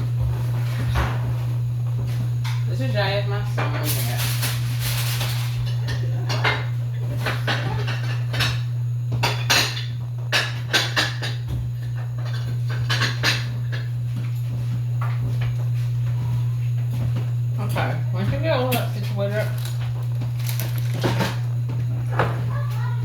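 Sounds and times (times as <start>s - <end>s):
steady low hum: 0.0s - 23.0s
dishes and utensils clinking: 3.6s - 13.9s, 18.7s - 21.5s.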